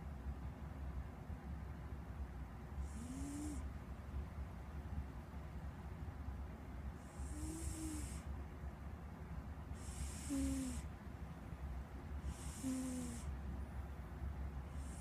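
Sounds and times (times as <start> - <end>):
cat snoring: 2.8 - 3.7, 7.0 - 8.3, 9.8 - 10.9, 12.2 - 13.3, 14.7 - 15.0.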